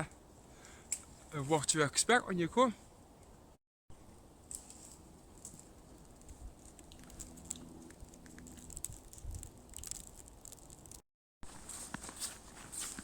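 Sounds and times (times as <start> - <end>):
footsteps on woodland path: 11.4 - 13.0.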